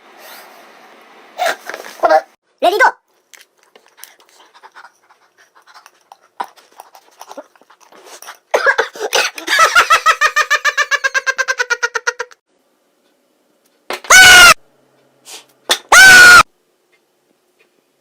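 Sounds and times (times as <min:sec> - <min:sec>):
person making rapid panting pulses: 0:03.9 - 0:09.5.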